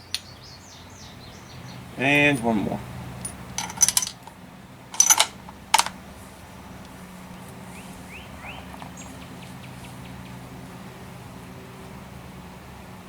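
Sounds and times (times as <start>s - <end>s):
low steady hum: 0.0s - 13.0s
rifle bolt metallic clicks: 3.2s - 6.0s
faint rising chirps: 6.1s - 12.0s.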